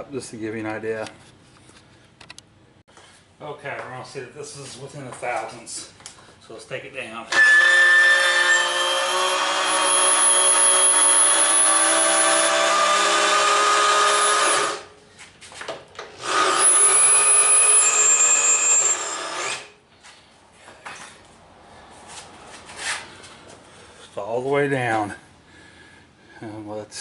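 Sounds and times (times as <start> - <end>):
power drill motor whine: 7.3 - 14.9, 16.2 - 19.7.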